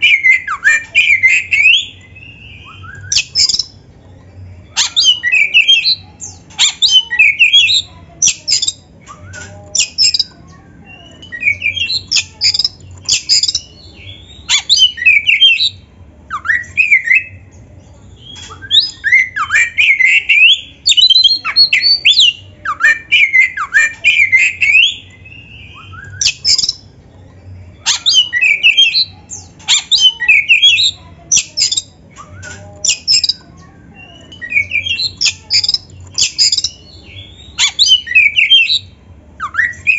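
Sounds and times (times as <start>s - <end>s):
bird singing whistled notes: 0.0s - 3.8s, 18.2s - 26.8s, 28.1s - 39.9s.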